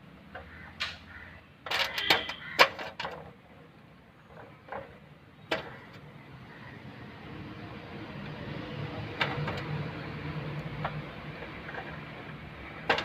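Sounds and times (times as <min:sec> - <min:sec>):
clicks of small metal parts: 0:01.6 - 0:03.3.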